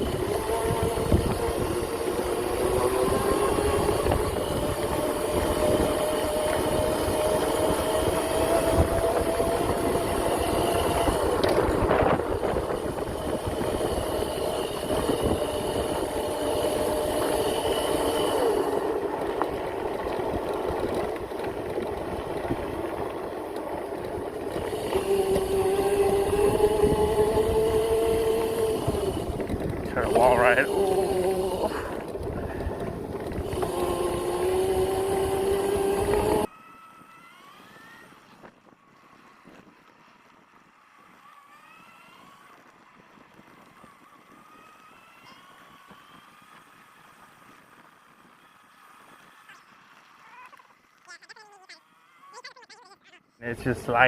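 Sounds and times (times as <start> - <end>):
electric motor whining: 0.0 - 52.5.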